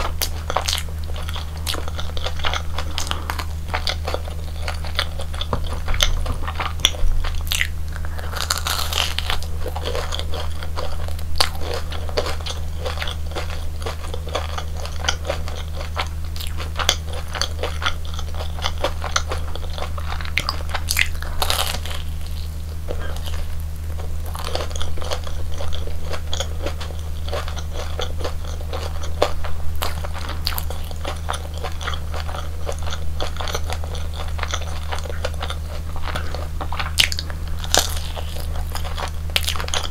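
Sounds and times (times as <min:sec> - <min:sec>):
crunchy bites and chewing: 0:00.0 - 0:39.9
steady low hum: 0:00.0 - 0:39.9.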